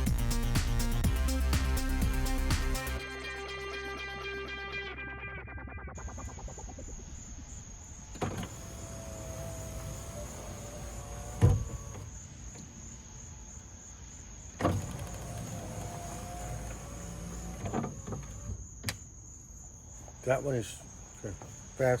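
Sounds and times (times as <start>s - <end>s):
power window motor whining: 7.9s - 12.7s, 14.6s - 18.9s.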